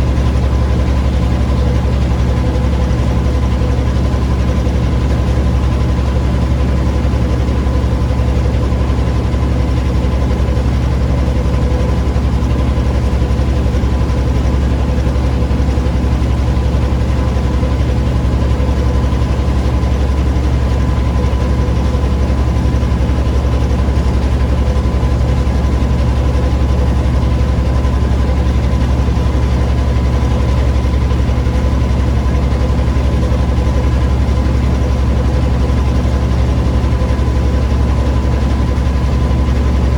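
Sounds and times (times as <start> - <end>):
engine droning: 34.0 - 39.9.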